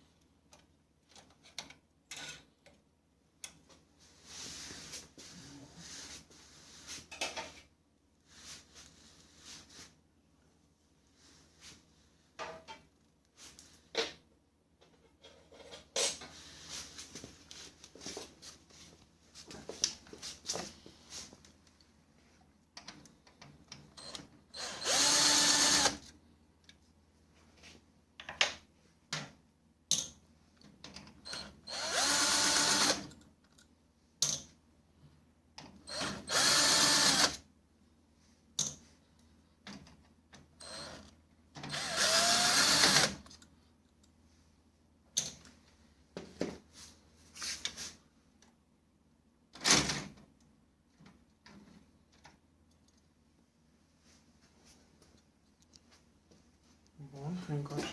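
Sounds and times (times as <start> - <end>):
electric screwdriver whirring: 24.6 - 26.0, 31.7 - 33.1, 35.9 - 37.4, 41.7 - 43.2.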